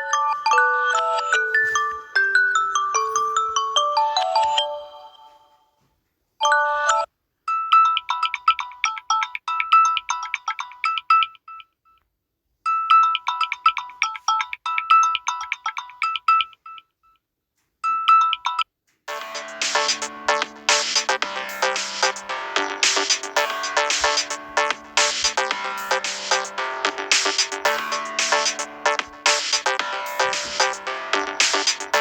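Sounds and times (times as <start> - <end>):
fast tinkling ringtone melody: 0.0 - 5.4, 6.4 - 11.0, 19.1 - 32.0
phone ringtone chime: 0.0 - 5.6, 6.4 - 11.7, 12.7 - 16.9, 17.9 - 32.0.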